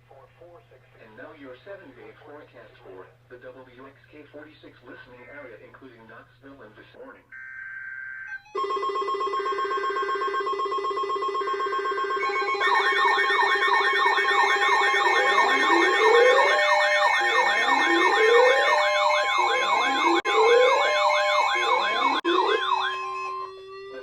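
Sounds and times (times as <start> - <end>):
pulsing alarm tone: 7.4 - 24.0
warbling siren wail: 7.4 - 24.0
rising whoop siren: 12.2 - 24.0.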